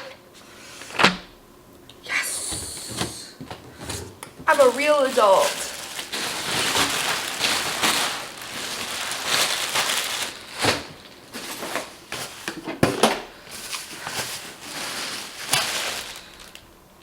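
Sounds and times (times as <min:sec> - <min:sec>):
packing material crinkling: 0:04.5 - 0:16.8.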